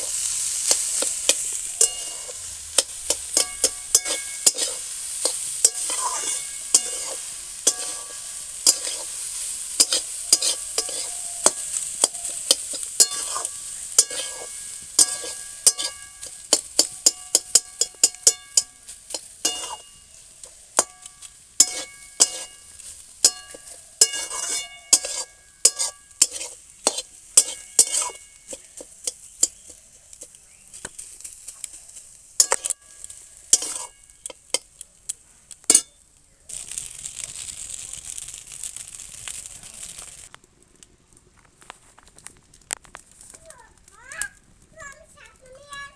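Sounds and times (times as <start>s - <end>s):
spatula scraping and knocking pan: 0.0s - 34.8s, 35.6s - 36.0s
rice sizzling: 0.0s - 45.9s
pan ringing: 1.7s - 9.1s, 9.8s - 20.2s.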